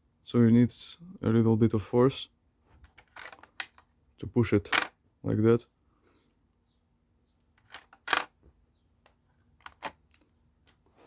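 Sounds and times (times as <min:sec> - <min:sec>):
plastic parts clicking: 0:02.8 - 0:03.9, 0:04.7 - 0:04.9, 0:07.6 - 0:08.4, 0:09.0 - 0:10.3.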